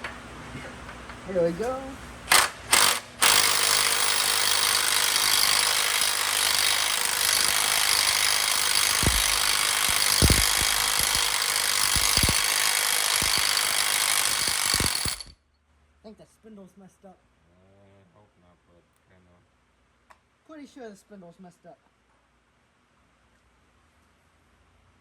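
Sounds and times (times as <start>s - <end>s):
power tool running: 2.3s - 15.3s.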